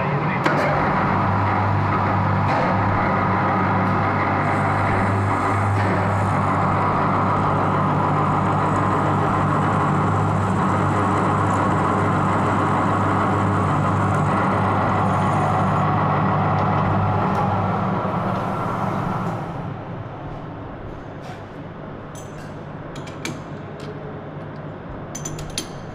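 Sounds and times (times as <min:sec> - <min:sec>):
lathe motor humming: 0:00.1 - 0:20.1.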